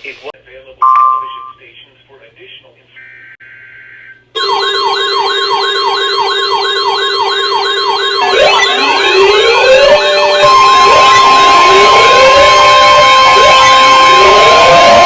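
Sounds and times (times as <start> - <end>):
electronic siren yelp: 3.0 - 15.0
steady held siren tone: 3.0 - 15.0
rising siren wails: 5.3 - 15.0.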